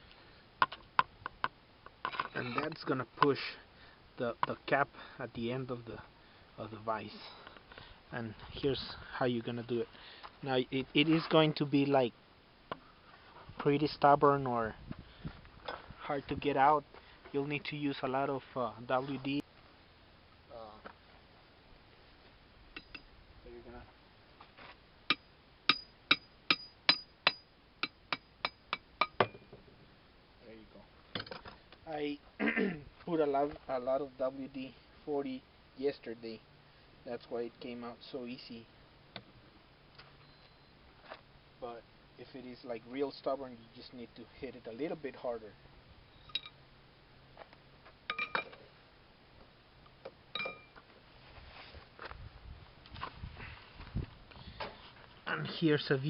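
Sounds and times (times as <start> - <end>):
hammer striking metal tubing: 25.1 - 29.4.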